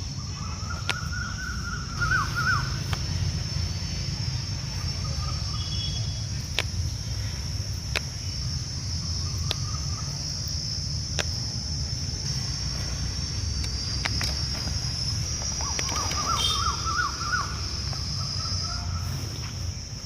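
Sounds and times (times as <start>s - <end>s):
crickets chirring: 0.0s - 20.0s
low steady rumble: 0.0s - 20.0s.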